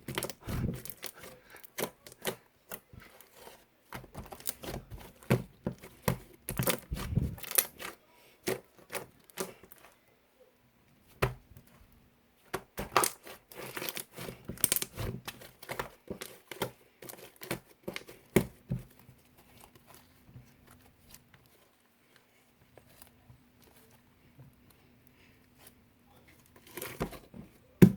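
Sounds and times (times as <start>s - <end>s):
slime crackling and popping: 6.5s - 7.8s.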